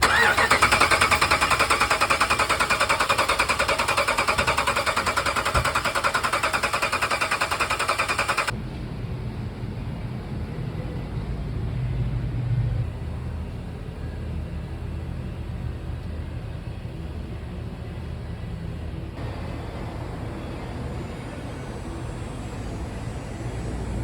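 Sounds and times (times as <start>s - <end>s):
engine ticking clatter: 0.0s - 8.6s
low engine rumble: 7.6s - 24.0s.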